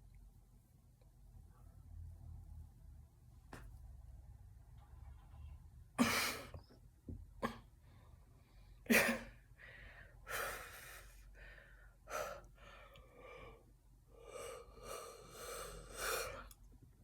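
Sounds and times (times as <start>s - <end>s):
breathing: 9.6s - 16.6s.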